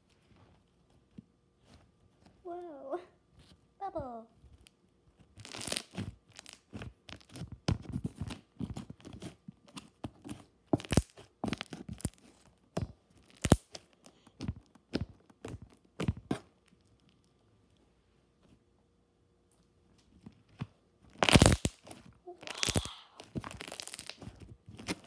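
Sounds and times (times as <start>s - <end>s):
slime squished by hand: 5.4s - 7.4s, 10.8s - 12.4s, 13.2s - 16.4s, 21.2s - 25.0s.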